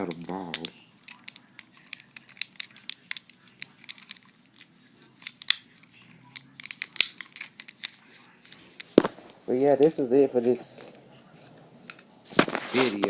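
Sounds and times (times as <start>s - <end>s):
fidget cube plastic clicks: 0.1s - 5.7s.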